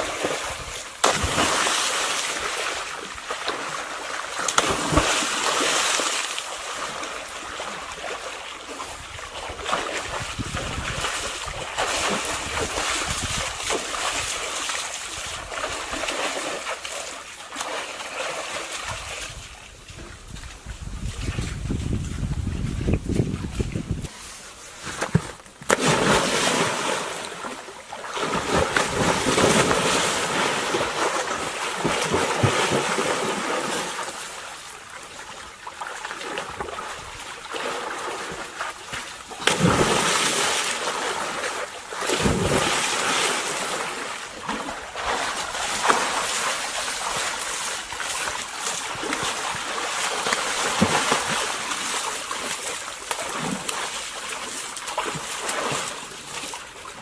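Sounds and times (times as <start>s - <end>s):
water splashing and sloshing: 0.0s - 57.0s.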